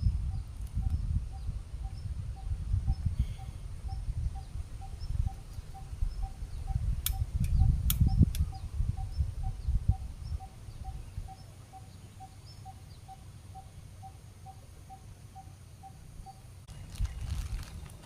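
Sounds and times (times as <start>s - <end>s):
sharp clicks: 7.0s - 8.5s.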